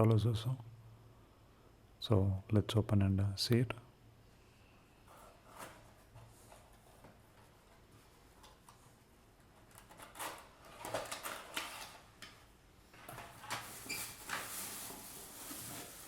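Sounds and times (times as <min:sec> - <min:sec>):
plastic packaging rustling: 0:09.7 - 0:12.4, 0:13.0 - 0:16.0.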